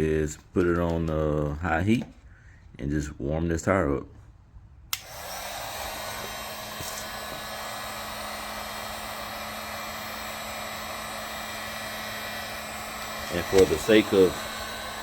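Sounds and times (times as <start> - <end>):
heat gun switch click: 4.9 - 5.4, 13.4 - 14.0
heat gun blowing: 4.9 - 15.0.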